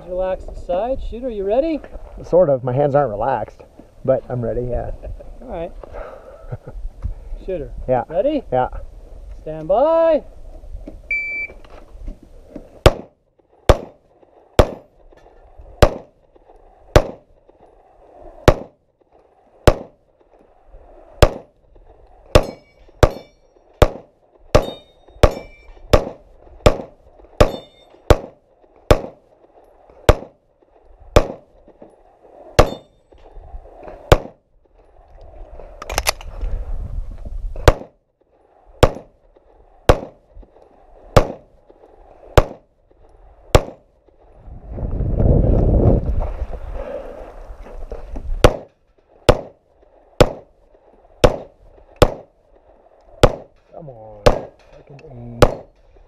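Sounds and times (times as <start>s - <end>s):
shot timer beep: 11.1s - 11.6s
pistol shots: 12.8s - 14.0s, 14.6s - 14.9s, 15.8s - 16.1s, 16.9s - 17.3s, 18.4s - 18.8s, 19.6s - 20.0s, 21.2s - 21.5s, 22.3s - 29.2s, 30.0s - 30.4s, 31.1s - 31.5s, 32.6s - 32.9s, 34.1s - 34.4s, 37.6s - 38.0s, 38.8s - 39.1s, 39.9s - 40.2s, 41.1s - 41.5s, 42.3s - 42.6s, 43.5s - 43.8s, 48.4s - 49.6s, 50.2s - 50.5s, 51.2s - 52.3s, 53.2s - 53.6s, 54.2s - 54.6s, 55.4s - 55.8s
metallic ring of steel targets: 22.4s - 23.6s, 24.6s - 25.8s, 27.4s - 28.1s, 32.6s - 33.0s.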